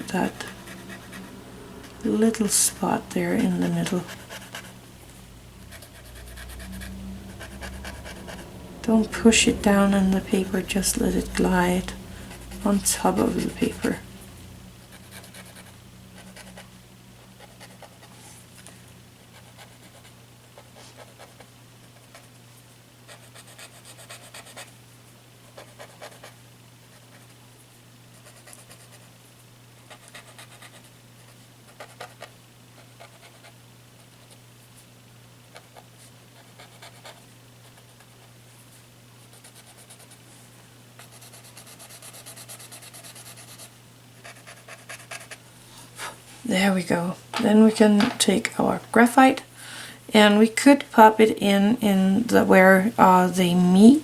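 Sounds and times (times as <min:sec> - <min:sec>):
low hum: 0:00.0 - 0:19.3.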